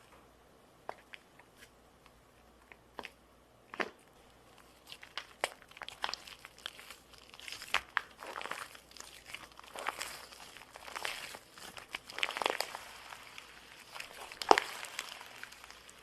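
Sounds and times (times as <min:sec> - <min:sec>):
sticky slime clicks and crackles: 0:04.8 - 0:16.0.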